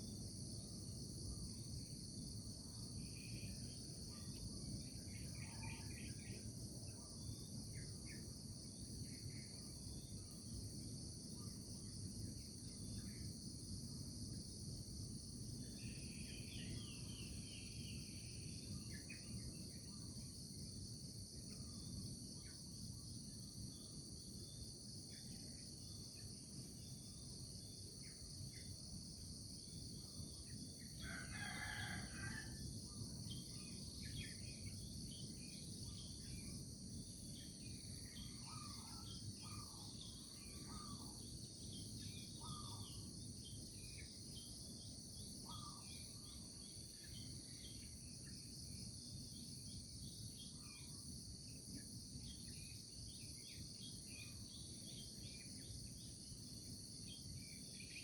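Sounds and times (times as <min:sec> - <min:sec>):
insect chorus: 0:00.0 - 0:58.0
rooster crowing: 0:31.0 - 0:32.6.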